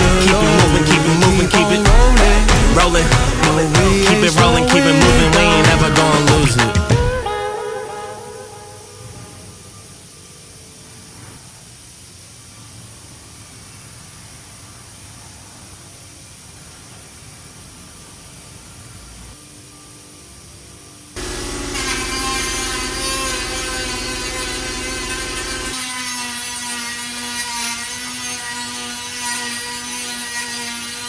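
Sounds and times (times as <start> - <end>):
power tool whining on sheet metal: 21.2 - 31.0.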